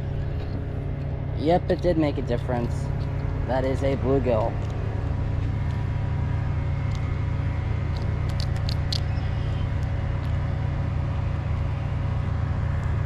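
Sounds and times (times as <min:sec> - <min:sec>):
faint hum: 0:00.0 - 0:13.0
low rumble: 0:00.0 - 0:13.0
sharp clicks: 0:07.9 - 0:09.2.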